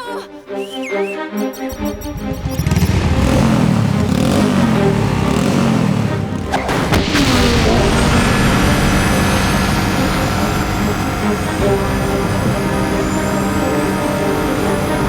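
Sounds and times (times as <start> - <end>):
cartoon action music: 0.0 - 15.0
loud mechanical rumble: 2.4 - 15.0
rising whine: 2.6 - 15.0
sharp crashes: 6.2 - 15.0.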